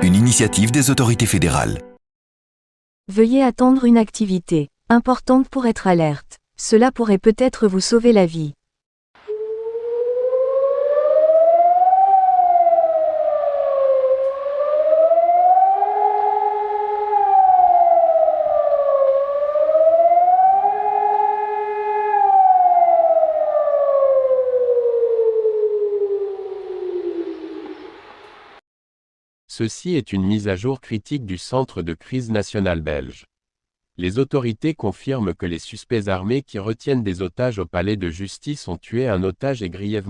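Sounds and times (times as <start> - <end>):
warning siren wailing: 9.2 - 28.4.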